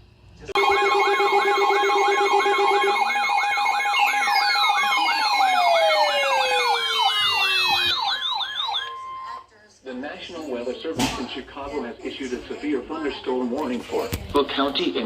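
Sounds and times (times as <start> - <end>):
fast warbling siren tone: 0.6 - 9.4
steady alarm tone: 0.6 - 9.5.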